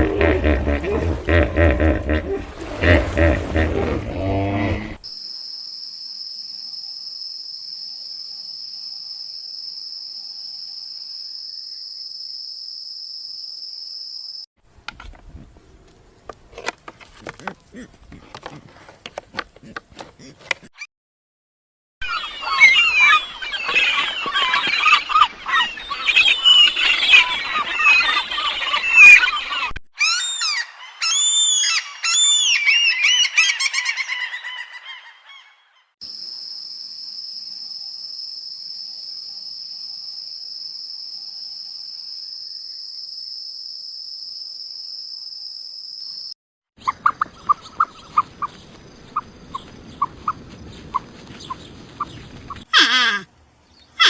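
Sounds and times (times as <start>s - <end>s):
flock of birds calling: 22.0s - 35.8s
arching bird calls: 22.1s - 35.6s, 46.8s - 53.2s.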